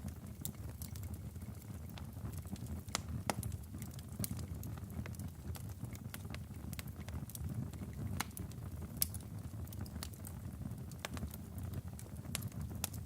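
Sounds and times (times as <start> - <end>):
fire rumbling: 0.0 - 13.0
logs crackling and popping: 0.0 - 13.0.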